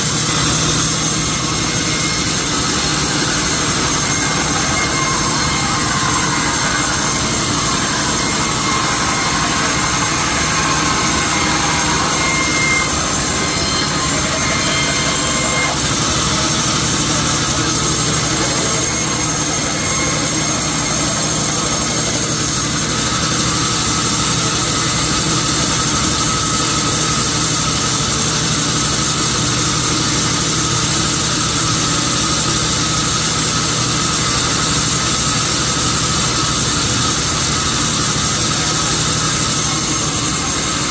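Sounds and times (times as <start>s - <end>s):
falling mechanical whine: 0.0s - 24.6s, 36.2s - 40.9s
sawmill machinery running: 0.0s - 40.9s.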